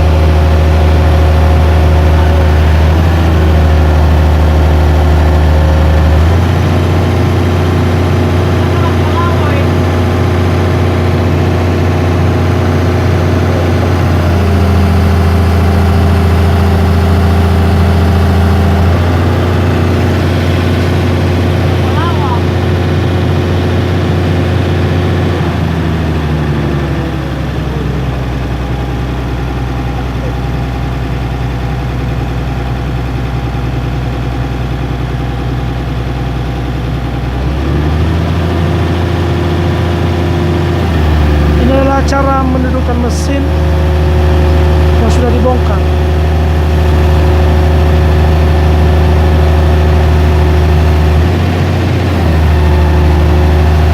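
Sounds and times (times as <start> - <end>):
heavy machine engine running: 0.0 - 53.9.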